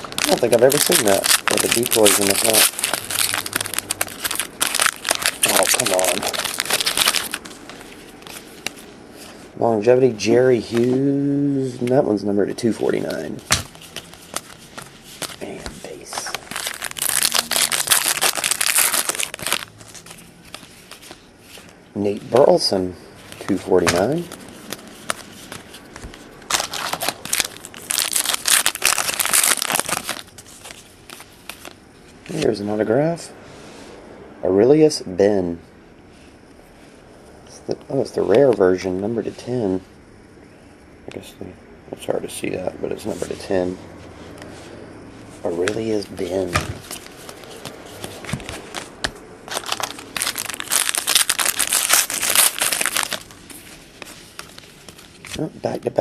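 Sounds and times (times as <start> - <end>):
trading cards crinkling and rustling: 0.0 - 11.1, 11.9 - 32.8, 44.4 - 56.0.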